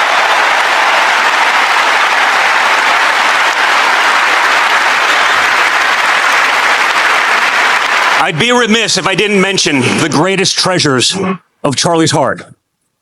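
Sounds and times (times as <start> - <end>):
large audience applauding: 0.0 - 9.7.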